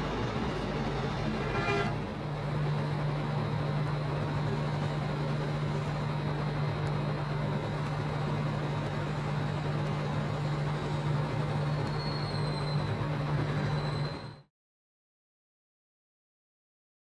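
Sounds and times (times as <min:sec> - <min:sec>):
constant low hum: 0:00.0 - 0:12.0
street traffic: 0:00.0 - 0:14.4.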